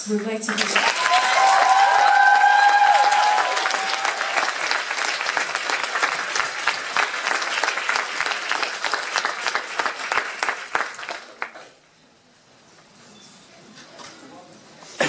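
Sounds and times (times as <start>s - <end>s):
audience clapping: 0.0s - 11.8s
audience cheering: 0.5s - 10.5s.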